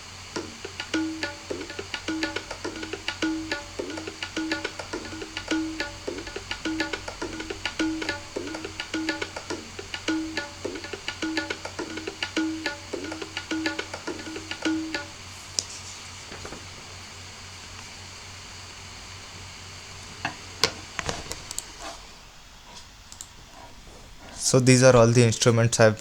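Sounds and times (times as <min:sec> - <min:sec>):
hand drum playing rhythm: 0:00.4 - 0:15.2.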